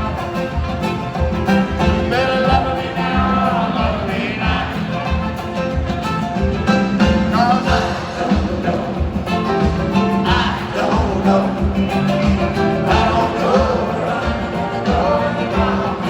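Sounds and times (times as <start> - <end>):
live rock band music: 0.0 - 16.0.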